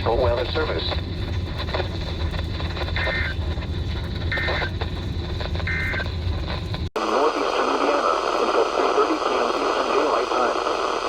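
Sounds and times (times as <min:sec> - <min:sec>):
radio hiss: 0:00.0 - 0:01.0, 0:02.8 - 0:03.4, 0:04.3 - 0:04.8, 0:07.0 - 0:11.0
low hum: 0:00.0 - 0:11.0.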